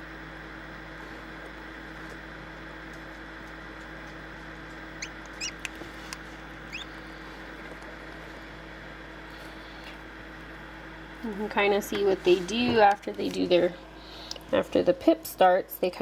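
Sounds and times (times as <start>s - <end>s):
steady low hum: 0.0s - 16.0s
chicks peeping: 5.0s - 5.8s, 6.7s - 7.0s.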